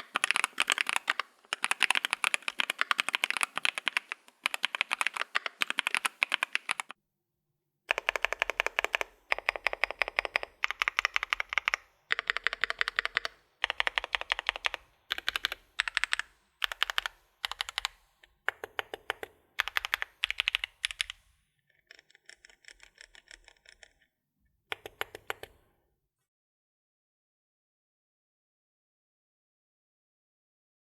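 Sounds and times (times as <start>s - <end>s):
mechanical keyboard typing: 0.0s - 6.9s, 7.9s - 24.0s, 24.7s - 25.6s.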